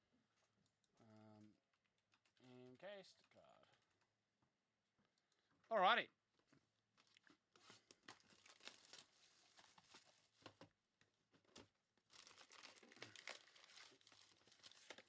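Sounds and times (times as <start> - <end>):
plastic wrapping crinkling: 7.0 - 10.6, 12.0 - 15.0.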